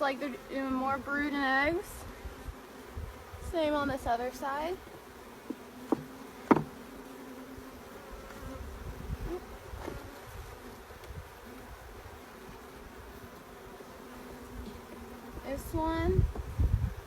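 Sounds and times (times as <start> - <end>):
honeybees buzzing: 0.0 - 17.0
sharp knock: 5.9 - 6.7.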